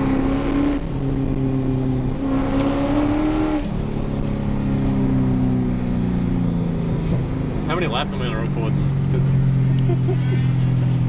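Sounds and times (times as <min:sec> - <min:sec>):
car engine revving hard: 0:00.0 - 0:09.6.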